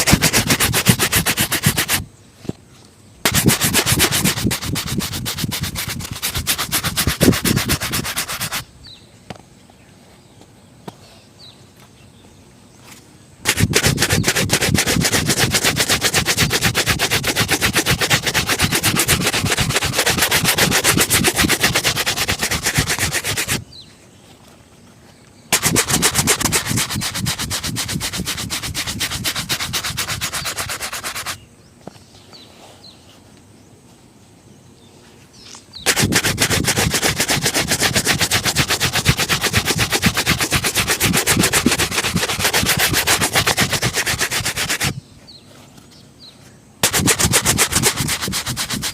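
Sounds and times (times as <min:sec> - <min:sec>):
shoe being buffed: 0:00.0 - 0:02.0, 0:03.3 - 0:08.6, 0:13.5 - 0:23.6, 0:25.5 - 0:31.4, 0:35.9 - 0:45.0, 0:46.8 - 0:48.9.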